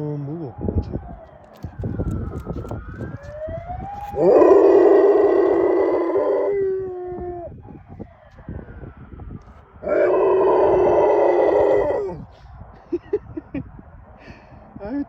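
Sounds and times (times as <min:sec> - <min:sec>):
siren wailing: 0:00.2 - 0:12.4
dog howling: 0:04.0 - 0:07.5, 0:09.8 - 0:12.2.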